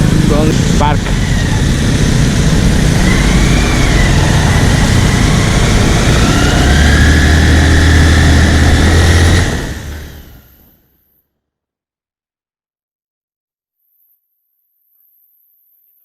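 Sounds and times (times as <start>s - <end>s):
wind rumbling on microphone: 0.0s - 10.4s
low drone: 0.0s - 10.8s
road traffic and engine noise: 0.0s - 10.8s.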